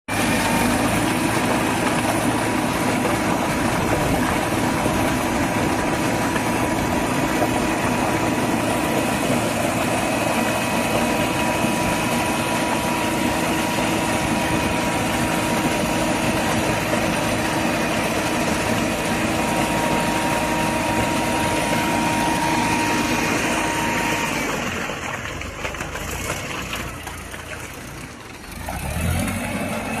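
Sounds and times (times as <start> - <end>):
concrete mixer engine running: 0.1 - 30.0.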